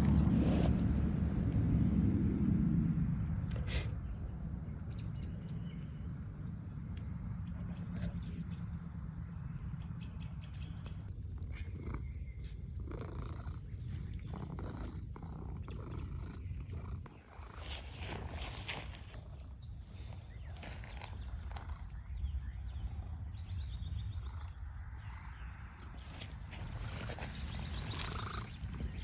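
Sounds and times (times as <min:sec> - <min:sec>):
cat purring: 0:00.0 - 0:01.1, 0:10.7 - 0:29.0.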